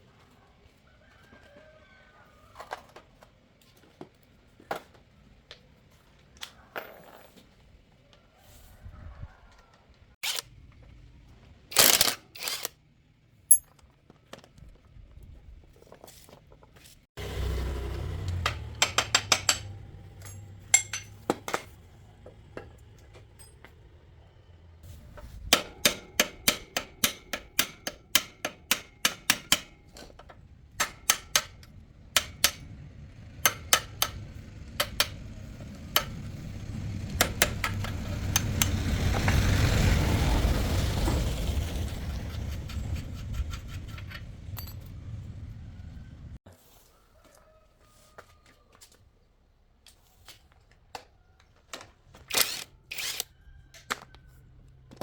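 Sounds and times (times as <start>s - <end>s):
hand tools tapping on metal: 17.9s - 21.8s, 25.4s - 39.4s.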